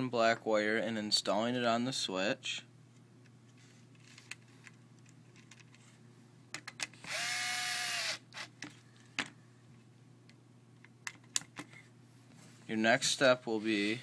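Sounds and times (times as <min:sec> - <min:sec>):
small clicks of parts handled: 0:03.9 - 0:05.8
power tool motor whirring: 0:07.1 - 0:08.5.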